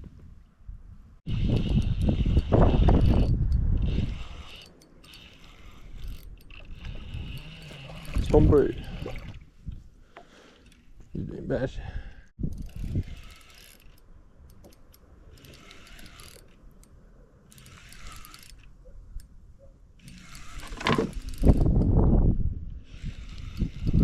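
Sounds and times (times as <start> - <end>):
fishing reel cranking: 1.3 - 9.0, 12.4 - 16.9, 17.5 - 18.8, 20.0 - 21.9, 22.8 - 24.0.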